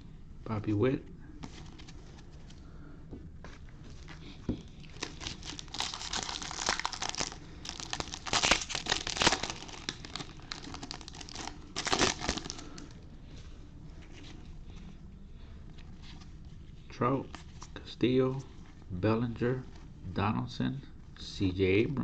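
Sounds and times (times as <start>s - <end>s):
foil wrapper crinkling and tearing: 4.0s - 13.0s.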